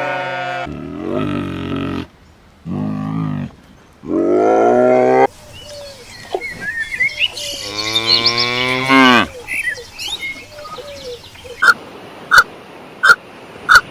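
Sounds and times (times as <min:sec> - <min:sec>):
cow mooing: 0:00.0 - 0:05.3, 0:07.6 - 0:09.4
small birds chirping: 0:02.0 - 0:04.1, 0:05.3 - 0:11.8.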